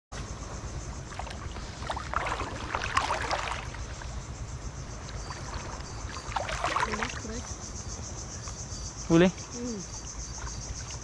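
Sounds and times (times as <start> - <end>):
crackling wash of water: 0.2 - 7.6.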